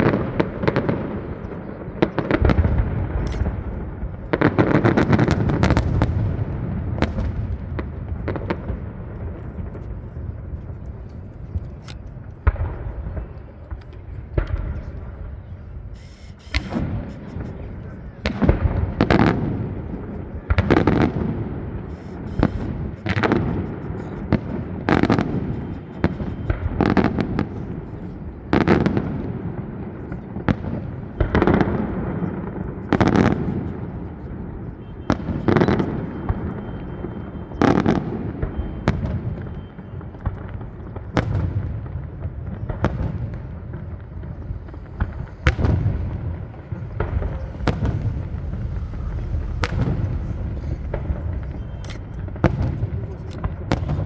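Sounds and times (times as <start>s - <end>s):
firework shells booming: 0.0s - 27.8s, 41.2s - 54.0s
fireworks crackling: 0.0s - 27.8s, 42.3s - 54.0s
low rumbling echo: 42.4s - 54.0s.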